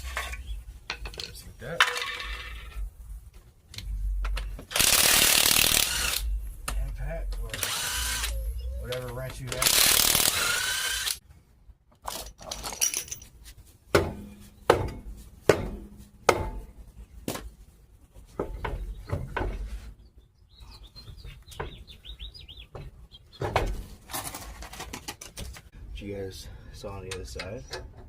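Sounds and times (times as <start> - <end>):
bird chirping: 0.2 - 0.7, 8.1 - 9.3, 18.5 - 23.5.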